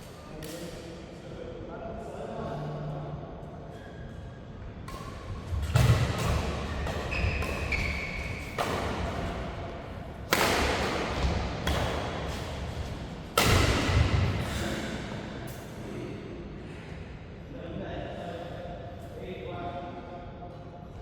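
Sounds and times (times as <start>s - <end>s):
rackets striking shuttlecock: 4.9s - 14.2s
shoe squeaks on court: 6.7s - 8.6s.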